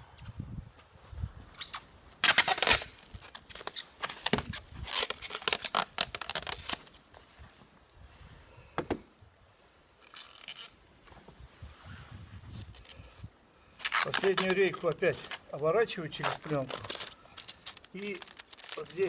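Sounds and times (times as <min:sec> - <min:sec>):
plastic sheeting crinkling: 0:02.2 - 0:08.4, 0:10.0 - 0:19.0.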